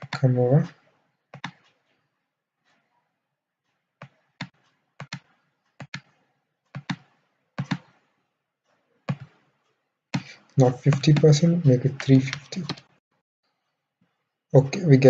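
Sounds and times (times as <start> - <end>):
mouse and keyboard clicks: 6.8 - 8.0, 10.2 - 12.9.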